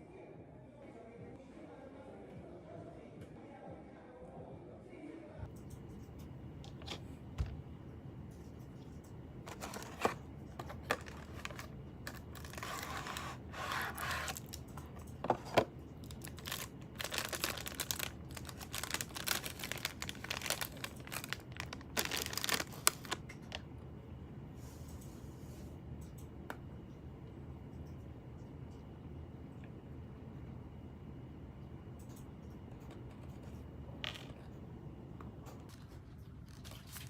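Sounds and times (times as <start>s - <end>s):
rustling and crinkling: 8.6s - 23.6s, 35.5s - 37.0s.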